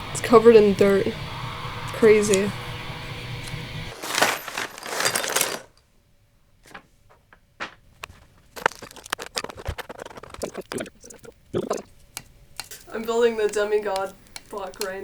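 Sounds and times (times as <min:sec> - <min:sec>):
rattling clatter: 0:03.9 - 0:05.7
small parts clinking: 0:03.9 - 0:05.8.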